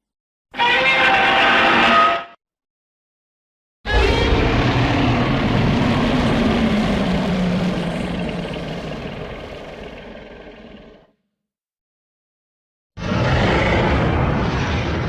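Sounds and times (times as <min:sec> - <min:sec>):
loud rumbling with falling tone: 0:03.9 - 0:11.0, 0:13.0 - 0:15.0.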